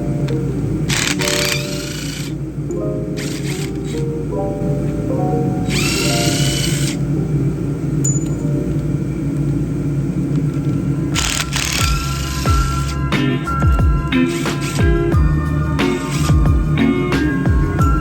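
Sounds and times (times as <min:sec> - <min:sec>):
background music: 0:00.0 - 0:09.3, 0:11.2 - 0:18.0
power tool whining: 0:00.9 - 0:02.4, 0:03.2 - 0:04.0, 0:05.7 - 0:07.0, 0:11.1 - 0:13.1.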